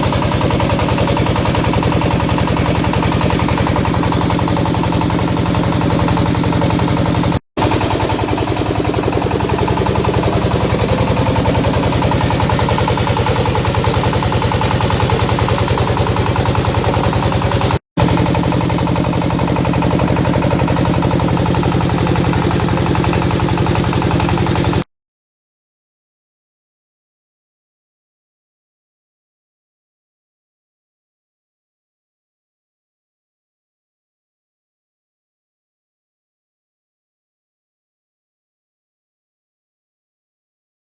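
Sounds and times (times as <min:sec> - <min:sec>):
machine drive drone: 0:00.0 - 0:24.8.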